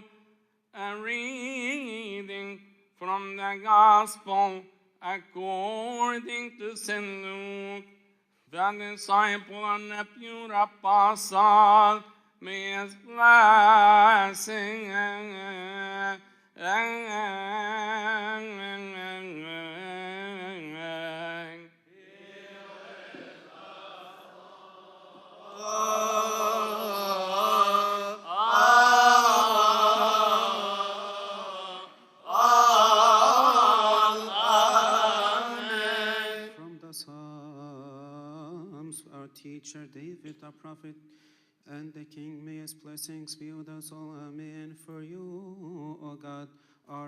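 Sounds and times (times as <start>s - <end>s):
group chanting: 21.9s - 36.6s
man chanting: 25.4s - 30.7s.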